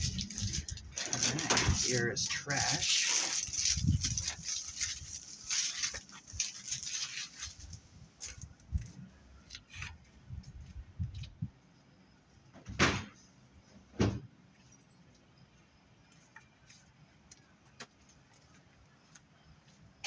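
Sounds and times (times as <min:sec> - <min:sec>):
metal cable rustling and clattering: 0:00.0 - 0:08.5
loud thump: 0:12.7 - 0:13.1.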